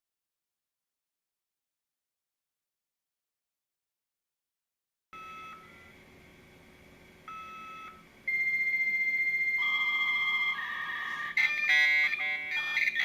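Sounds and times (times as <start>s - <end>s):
modem answer tone: 7.3s - 13.0s
modem screeching: 9.2s - 13.0s.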